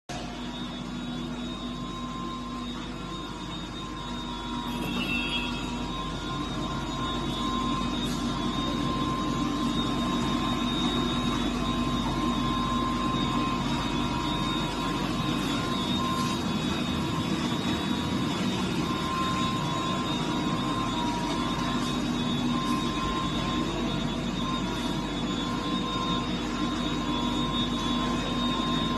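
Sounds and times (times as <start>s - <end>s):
high whining tones: 0.1s - 28.9s
machinery humming: 0.1s - 28.9s.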